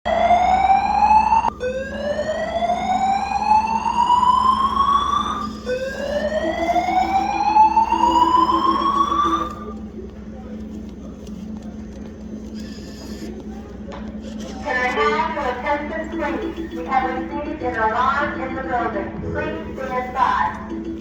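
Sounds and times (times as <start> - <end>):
rising whoop siren: 0.1 - 9.8
fast low beeping tone: 3.8 - 9.8, 15.2 - 21.0.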